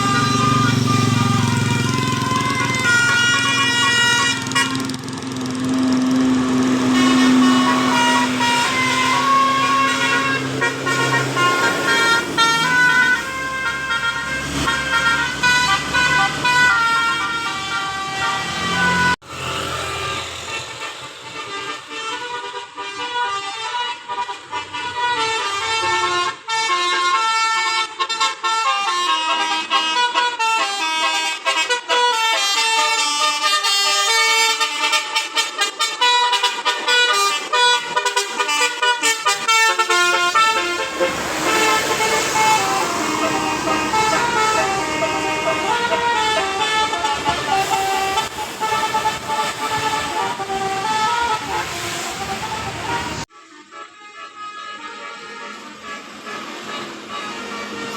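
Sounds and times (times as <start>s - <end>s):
musical air horn playing tune: 0.0s - 57.9s
broad rushing noise: 39.4s - 53.3s.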